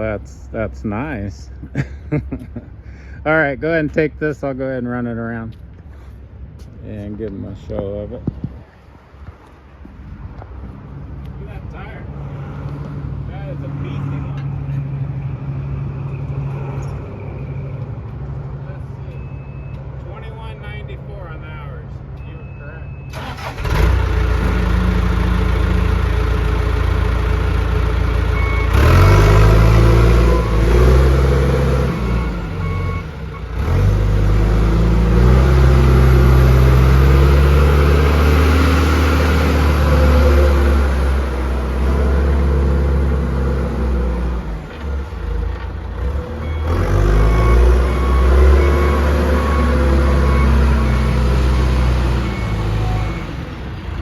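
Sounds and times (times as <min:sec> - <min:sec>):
reverse alarm beeping: 0:19.1 - 0:19.8, 0:28.3 - 0:31.0, 0:31.8 - 0:33.5, 0:46.4 - 0:51.1, 0:52.2 - 0:53.4
diesel engine revving: 0:23.1 - 0:54.0.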